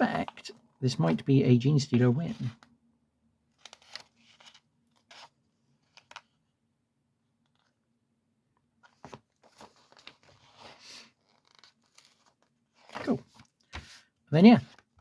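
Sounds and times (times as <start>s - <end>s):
magazine pages rustling: 3.5s - 6.4s, 8.8s - 15.0s.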